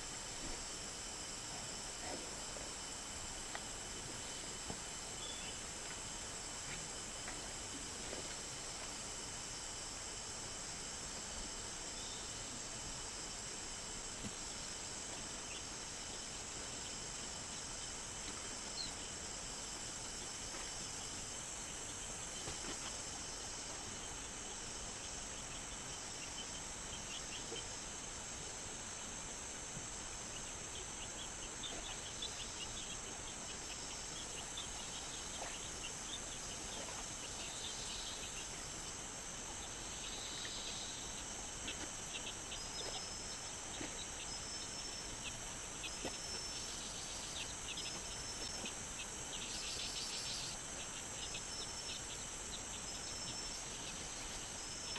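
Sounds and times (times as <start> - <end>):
insects droning: 0.0 - 54.9.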